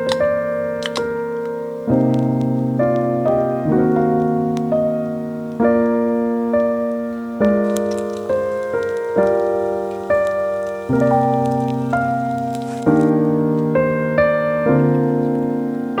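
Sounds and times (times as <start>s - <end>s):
slow gentle piano chords: 0.0s - 16.0s.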